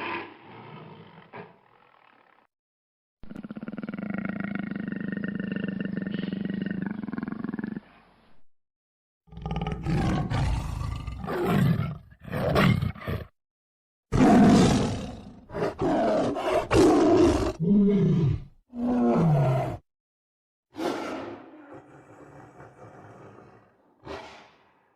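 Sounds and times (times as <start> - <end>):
tiger roaring: 0.0 - 2.4, 9.3 - 13.3, 14.1 - 19.8, 20.8 - 24.9
tiger growling: 0.0 - 2.5, 9.3 - 13.3, 14.2 - 19.8, 20.8 - 24.9
tiger snarling: 14.2 - 19.8, 20.8 - 24.8.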